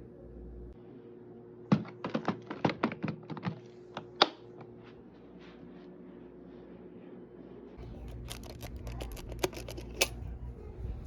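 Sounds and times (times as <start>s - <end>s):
faint steady hum: 0.0s - 11.0s
hard objects clicking and knocking: 1.7s - 4.4s, 8.0s - 10.2s.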